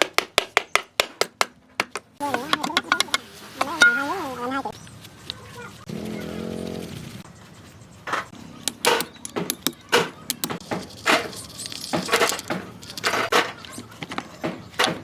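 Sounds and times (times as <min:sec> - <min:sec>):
metal tools clinking and knocking: 0:08.6 - 0:13.4.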